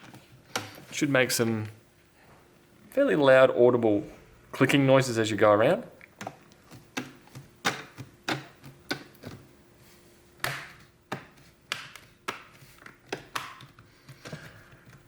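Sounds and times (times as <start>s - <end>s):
plastic clips snapping into place: 10.4s - 14.4s.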